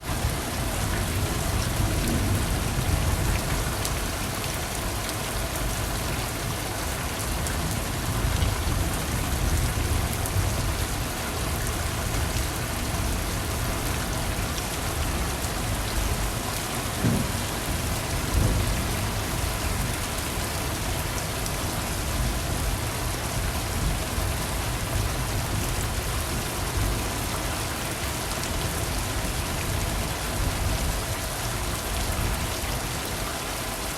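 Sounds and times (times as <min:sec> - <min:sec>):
rain falling: 0:00.0 - 0:33.9.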